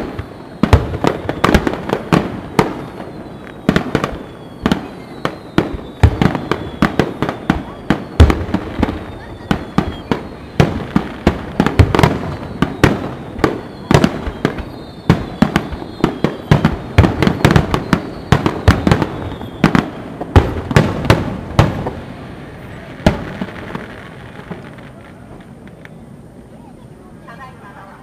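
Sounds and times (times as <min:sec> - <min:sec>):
faint falling whistles: 0:00.0 - 0:20.0, 0:24.8 - 0:26.2
firework shells bursting: 0:00.0 - 0:22.0.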